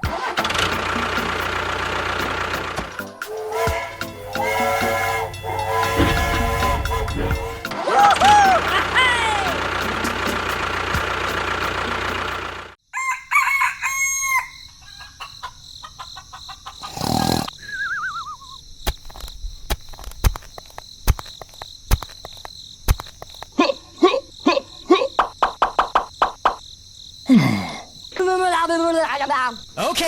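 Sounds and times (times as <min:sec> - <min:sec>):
loud steady sound: 0:00.8 - 0:07.8
rooster crowing: 0:03.3 - 0:09.6, 0:12.9 - 0:16.6
sharp clicks: 0:18.9 - 0:23.5.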